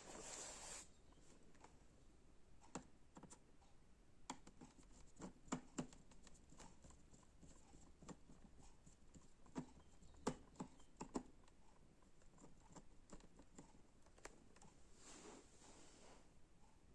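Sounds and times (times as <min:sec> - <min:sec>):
soft rustle: 0:00.0 - 0:01.4, 0:14.6 - 0:16.4
faint clicks and knocks: 0:02.6 - 0:14.9.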